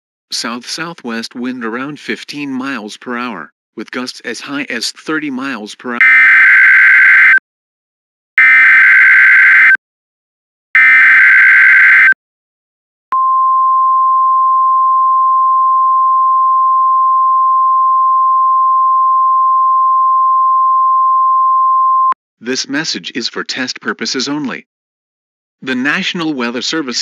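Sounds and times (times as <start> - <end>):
harsh digital data screech: 6.0 - 7.4, 10.8 - 12.2
steady single-pitch alarm tone: 6.0 - 7.4, 8.4 - 9.8, 10.8 - 12.2.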